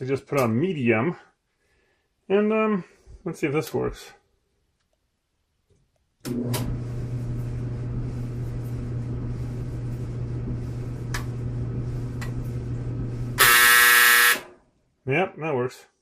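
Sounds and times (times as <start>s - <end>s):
clothes dryer motor humming: 6.2s - 14.5s.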